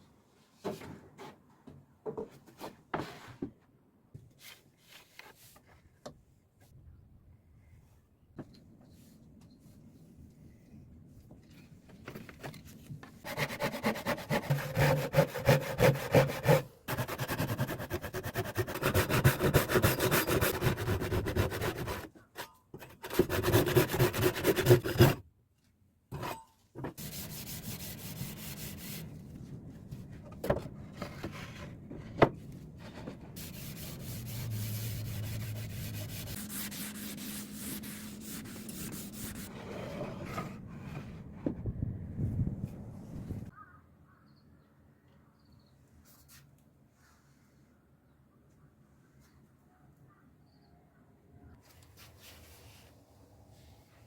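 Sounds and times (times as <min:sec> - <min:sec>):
wood being sanded: 0:13.3 - 0:22.1, 0:23.0 - 0:25.2, 0:27.0 - 0:29.0, 0:33.4 - 0:39.5.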